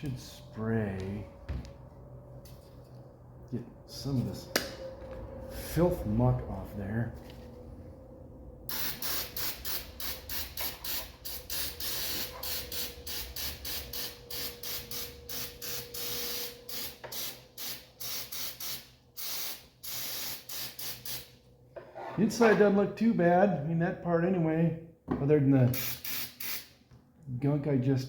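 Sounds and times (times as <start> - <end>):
spray cleaner hissing: 8.7 - 21.2, 25.8 - 26.6.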